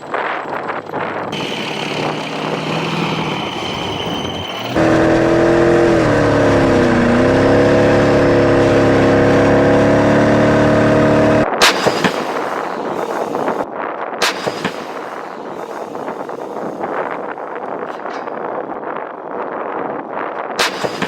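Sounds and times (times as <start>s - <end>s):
heavy vehicle engine whining: 0.0s - 18.8s
gunfire or explosions: 11.4s - 18.3s, 20.6s - 21.0s.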